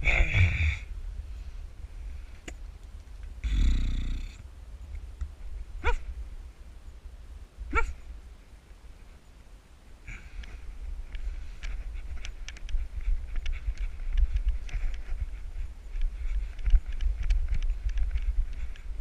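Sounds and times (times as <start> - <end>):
dog yipping: 5.8 - 6.0, 7.7 - 8.0.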